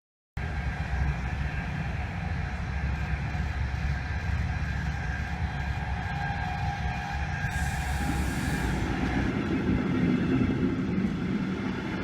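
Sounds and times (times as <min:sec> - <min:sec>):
train rumbling on track: 0:00.4 - 0:12.0
high whine: 0:07.0 - 0:10.6.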